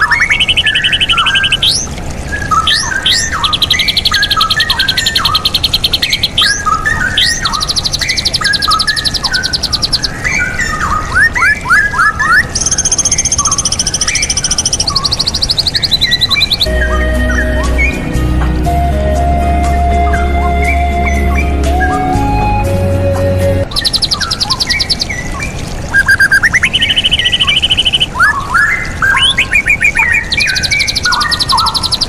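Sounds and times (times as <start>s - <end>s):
high-pitched bird trills: 0.0s - 18.2s, 19.2s - 32.0s
bird whistled song: 0.0s - 32.0s.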